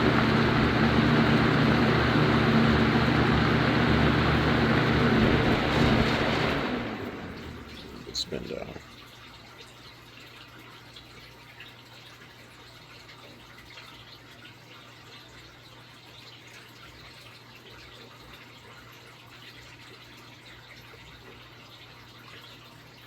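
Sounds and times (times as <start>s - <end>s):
filter water trickling: 0.0s - 5.7s, 6.5s - 23.0s
low hum: 0.0s - 8.8s.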